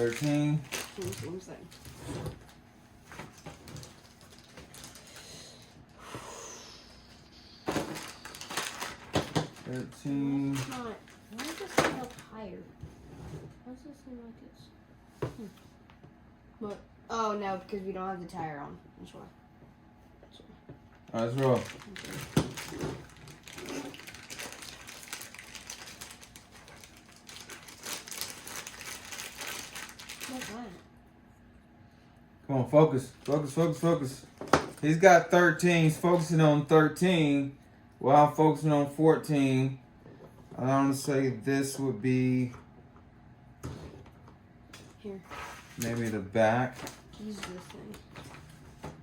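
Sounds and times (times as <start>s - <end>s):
plastic bags rustling: 0.0s - 5.7s, 7.6s - 12.3s, 21.2s - 30.7s, 33.1s - 35.0s.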